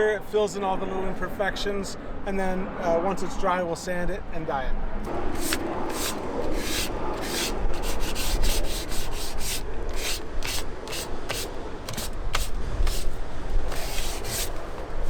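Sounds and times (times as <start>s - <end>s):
sanding leather rasping strokes: 5.1s - 15.0s.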